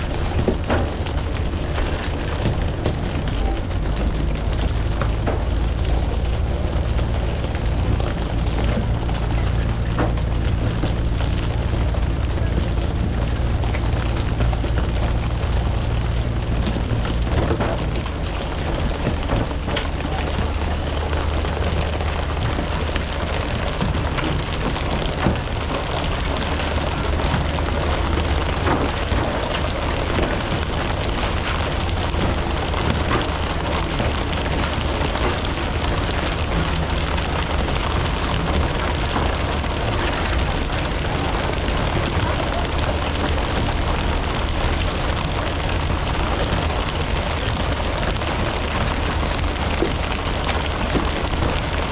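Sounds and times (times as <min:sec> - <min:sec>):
boat engine droning: 0:00.0 - 0:51.9
hiss of water and wind: 0:00.0 - 0:51.9.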